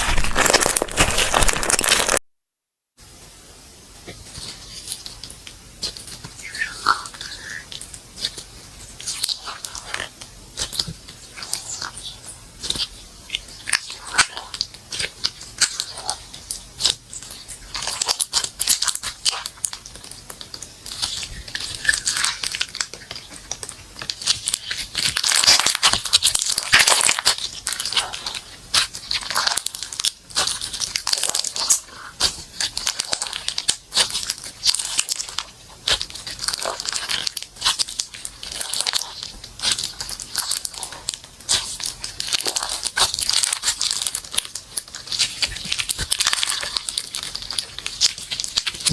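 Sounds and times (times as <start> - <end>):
slime squeezed and stretched: 0.0 - 2.2, 5.8 - 48.9.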